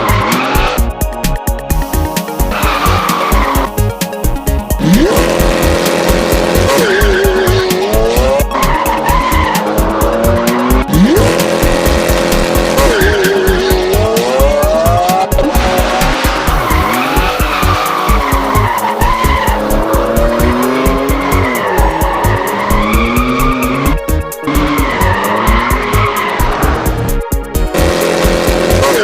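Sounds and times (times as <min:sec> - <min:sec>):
race car engines revving: 0:00.0 - 0:01.0, 0:02.4 - 0:29.0
background music with steady beat: 0:00.0 - 0:29.0
tyres squealing: 0:02.4 - 0:03.8, 0:06.5 - 0:11.3, 0:16.5 - 0:26.7.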